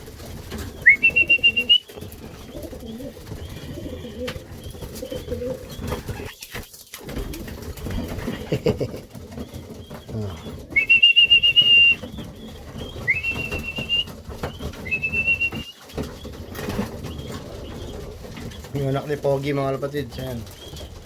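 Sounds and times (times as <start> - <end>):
pigeons cooing: 0.0 - 21.0
person whistling long notes: 0.9 - 1.8, 10.7 - 12.0, 13.1 - 14.1, 14.9 - 15.8.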